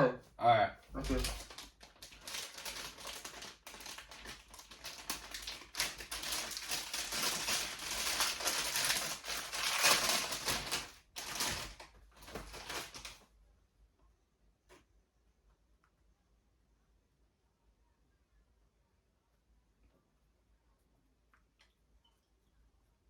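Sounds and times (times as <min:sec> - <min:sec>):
packaging crinkling: 0:01.0 - 0:13.2.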